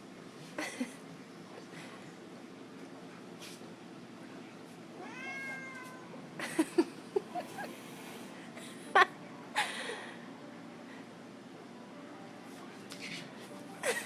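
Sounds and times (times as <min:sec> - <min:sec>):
cat meowing: 0:05.0 - 0:06.1.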